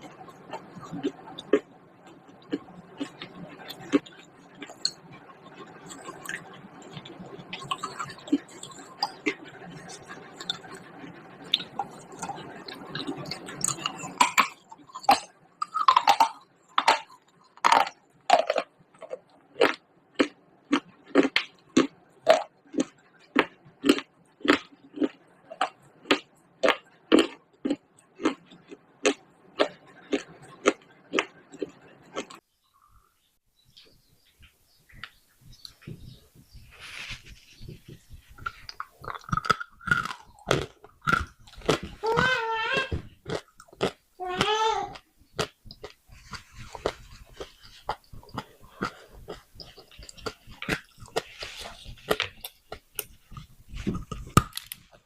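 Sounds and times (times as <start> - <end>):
crunchy chewing close to microphone: 0.0 - 32.4, 33.7 - 55.0.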